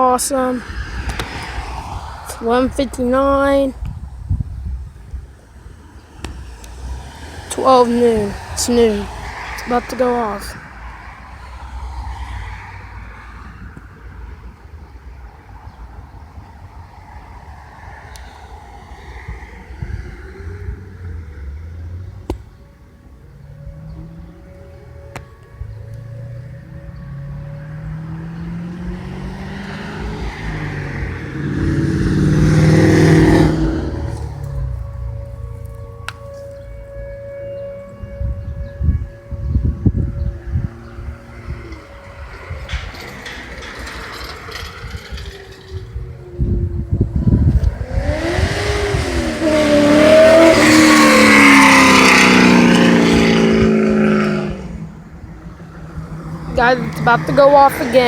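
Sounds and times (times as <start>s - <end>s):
car passing by: 0.0s - 58.0s
road noise rush: 0.0s - 58.0s.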